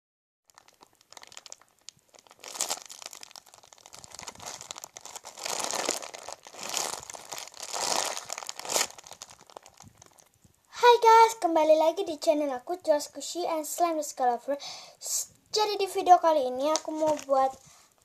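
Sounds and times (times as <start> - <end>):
plastic packaging crinkling: 0.5 - 10.5, 16.5 - 17.7.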